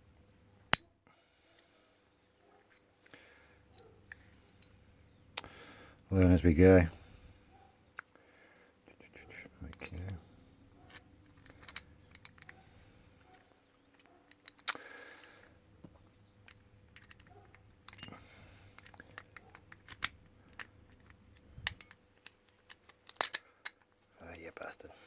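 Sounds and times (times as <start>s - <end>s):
padlock parts clicking: 9.6s - 24.0s.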